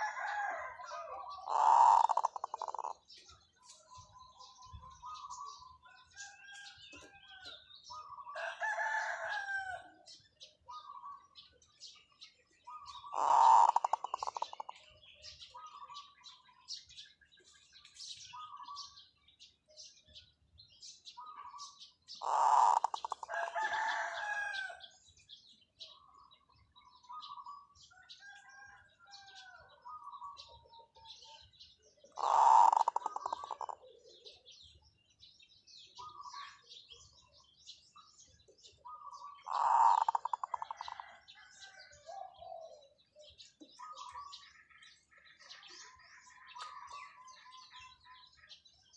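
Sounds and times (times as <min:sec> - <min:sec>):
dove rattling coos: 0:00.0 - 0:03.2, 0:12.9 - 0:14.8, 0:22.2 - 0:24.0, 0:32.1 - 0:34.3, 0:39.4 - 0:41.3
soft dove coo notes: 0:00.0 - 0:03.2, 0:12.7 - 0:16.1, 0:21.6 - 0:24.3, 0:32.1 - 0:34.8, 0:38.9 - 0:44.5.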